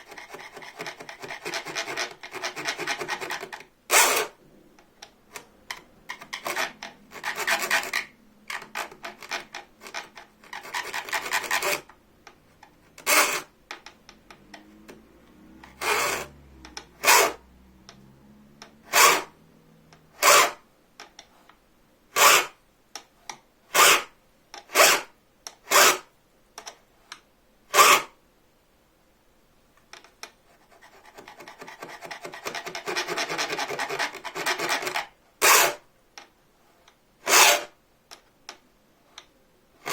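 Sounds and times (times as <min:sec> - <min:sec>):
hand file rasping on saw blade: 0:00.0 - 0:04.4, 0:06.3 - 0:11.9, 0:13.0 - 0:13.5, 0:15.7 - 0:16.4, 0:17.0 - 0:17.4, 0:18.8 - 0:19.4, 0:20.2 - 0:20.6, 0:22.2 - 0:22.6, 0:23.7 - 0:24.1, 0:24.7 - 0:25.1, 0:25.7 - 0:26.1, 0:27.7 - 0:28.2, 0:30.6 - 0:35.8, 0:37.2 - 0:37.8.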